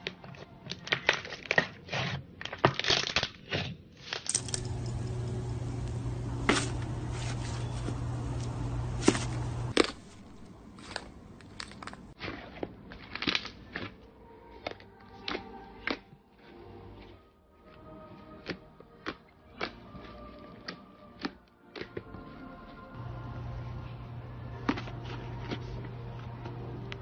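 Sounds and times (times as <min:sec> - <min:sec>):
low hum: 0:04.3 - 0:12.2.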